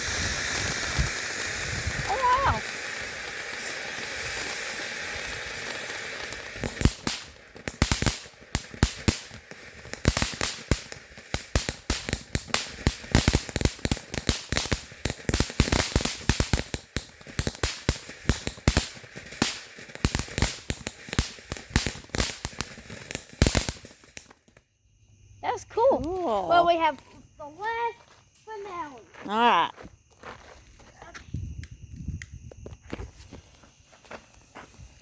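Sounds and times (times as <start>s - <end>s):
firework hissing: 0.0s - 24.6s
fireworks banging and crackling: 0.0s - 24.6s.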